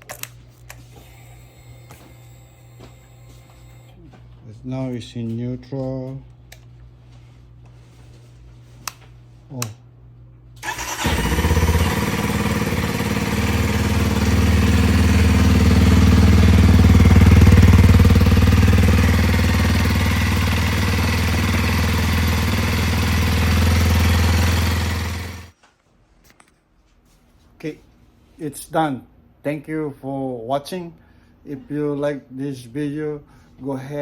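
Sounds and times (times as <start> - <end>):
motorcycle engine starting and idling: 10.6 - 25.5.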